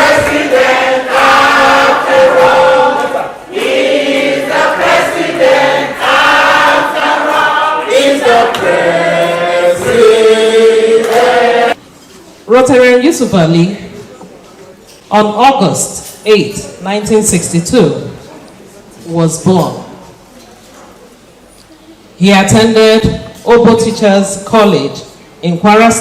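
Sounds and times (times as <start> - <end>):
choir singing: 0.0 - 11.8.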